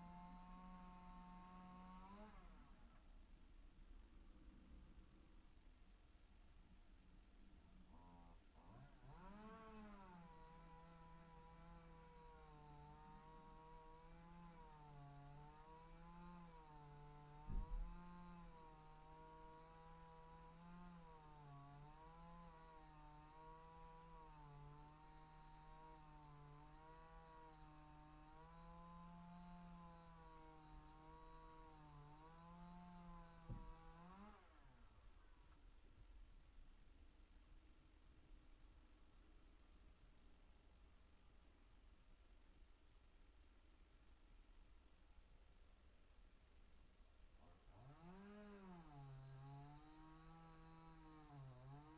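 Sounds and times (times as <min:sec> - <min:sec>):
chainsaw cutting wood: 0:00.0 - 0:03.1, 0:07.9 - 0:35.6, 0:47.4 - 0:51.9.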